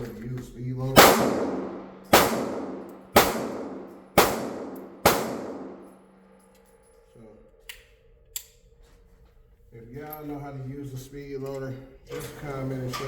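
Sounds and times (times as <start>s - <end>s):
gunshots echoing: 1.0s - 6.0s.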